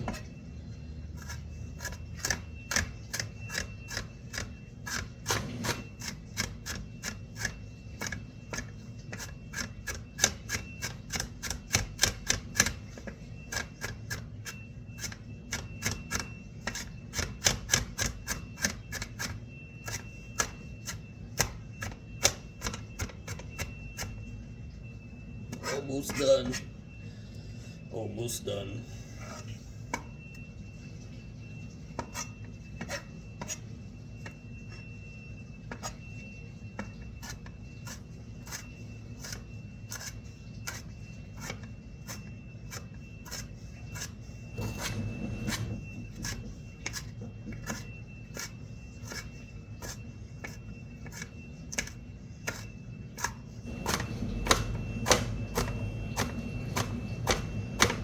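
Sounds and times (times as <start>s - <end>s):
faint high whine: 0.0s - 58.0s
knife chopping on cutting board: 53.7s - 58.0s.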